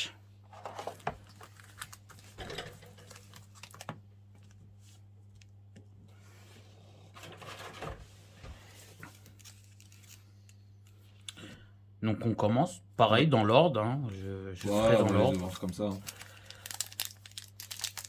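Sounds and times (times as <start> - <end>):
low electrical hum: 0.0 - 18.0
cards clicking and rustling: 0.6 - 4.6, 8.9 - 11.0, 14.6 - 18.0.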